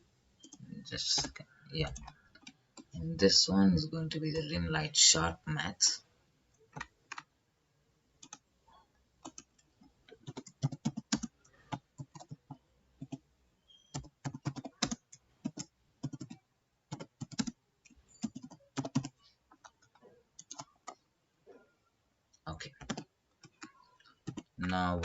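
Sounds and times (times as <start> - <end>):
computer keyboard typing: 0.4 - 3.0, 6.6 - 7.3, 8.2 - 8.5, 9.2 - 13.2, 13.8 - 21.0, 22.7 - 24.8.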